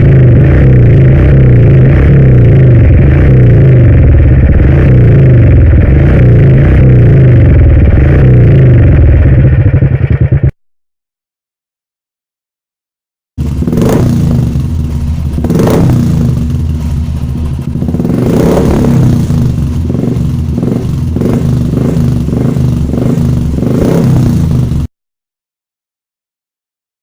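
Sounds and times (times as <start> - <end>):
motorcycle engine thumping idle: 7.4 - 10.5, 13.4 - 24.9.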